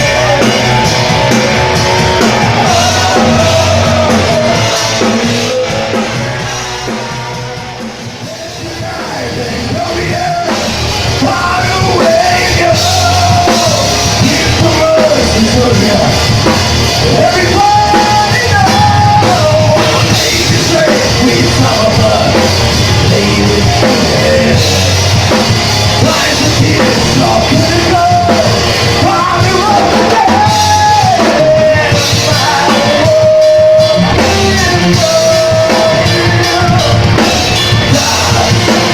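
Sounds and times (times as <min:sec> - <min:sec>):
person singing: 0:00.0 - 0:38.9
rock band playing: 0:00.0 - 0:38.9.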